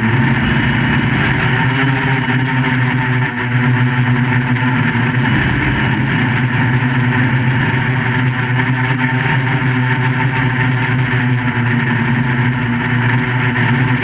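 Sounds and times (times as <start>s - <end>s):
quadcopter motors droning: 0.0s - 14.0s.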